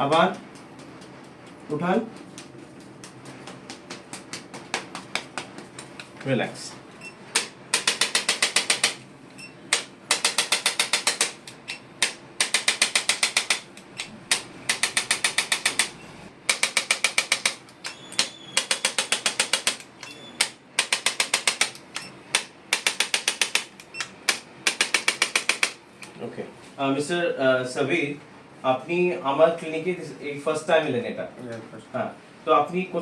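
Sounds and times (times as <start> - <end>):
percussion device rapid clicking taps: 0.0 - 6.1, 7.3 - 9.0, 9.7 - 25.8.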